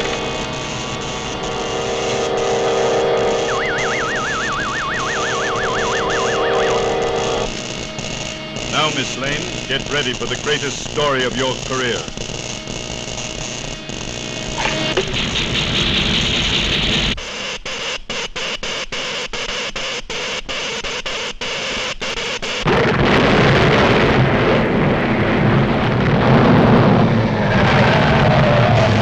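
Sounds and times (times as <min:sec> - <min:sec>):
electric crackling: 0:00.0 - 0:07.8.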